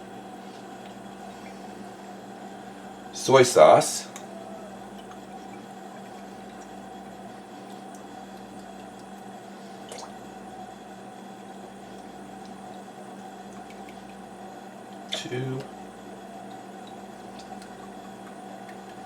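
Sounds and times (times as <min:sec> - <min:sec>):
kitchen hum: 0:00.0 - 0:19.0
faint liquid sounds: 0:00.3 - 0:19.0.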